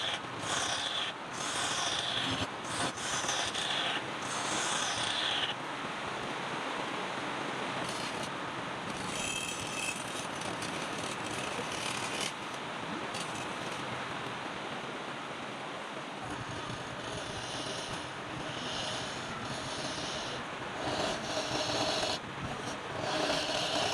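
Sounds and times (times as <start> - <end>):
tool scraping wood on lathe: 0.0 - 5.6, 7.8 - 8.3, 8.9 - 13.8, 16.2 - 23.9.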